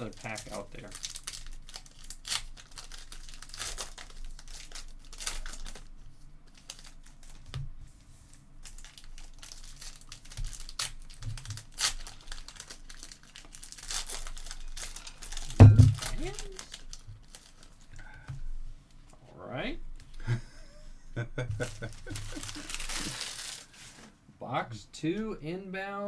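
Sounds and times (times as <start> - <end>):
card packs torn open: 0.0 - 7.5, 8.6 - 18.2, 21.6 - 23.9
cards rustling: 0.0 - 19.2, 20.0 - 24.2
wrappers crinkling: 0.0 - 19.2, 19.9 - 24.2.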